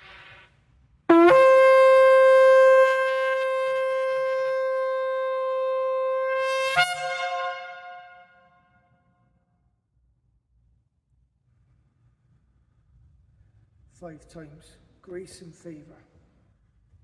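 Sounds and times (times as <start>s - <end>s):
shofar long blast: 1.1s - 8.5s.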